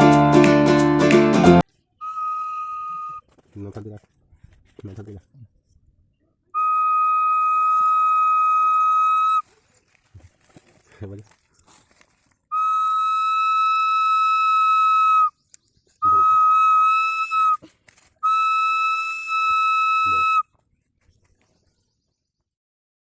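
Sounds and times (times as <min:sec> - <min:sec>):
bamboo whistle blasts: 0:02.0 - 0:03.3, 0:06.6 - 0:09.4, 0:12.5 - 0:15.4, 0:16.0 - 0:20.5.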